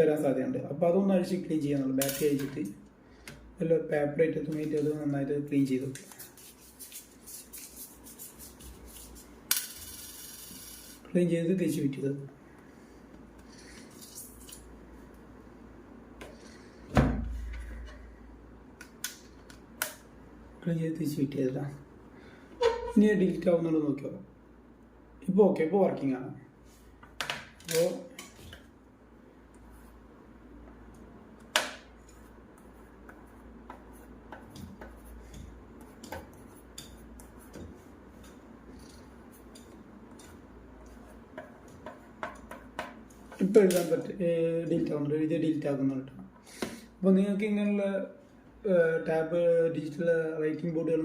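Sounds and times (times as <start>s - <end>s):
stylus tapping and scraping: 30.6s - 43.9s.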